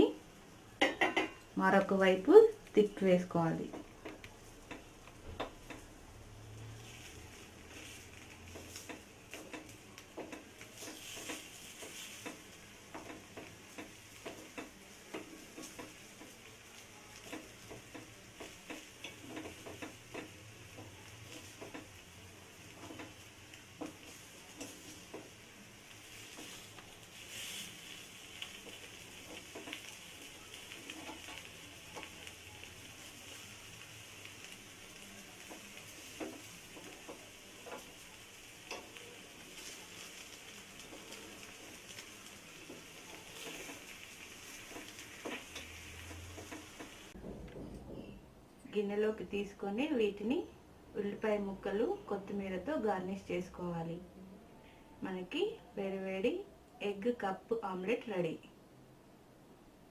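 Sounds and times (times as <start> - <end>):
egg frying in oil: 0.1 - 47.3.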